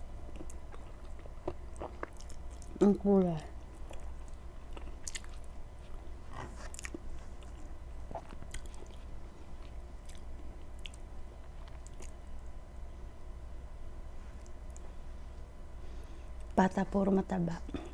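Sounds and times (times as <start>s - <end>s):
person chewing food: 0.2s - 2.9s, 3.6s - 12.5s.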